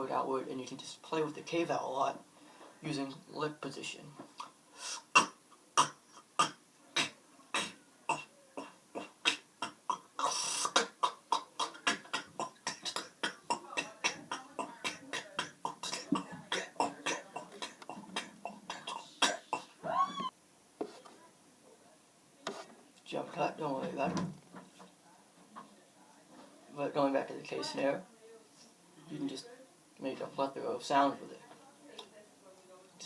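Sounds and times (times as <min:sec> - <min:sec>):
short mouth hiss: 0:04.4 - 0:07.8, 0:09.2 - 0:12.3
beatboxed mouth snare clicks: 0:09.2 - 0:13.4.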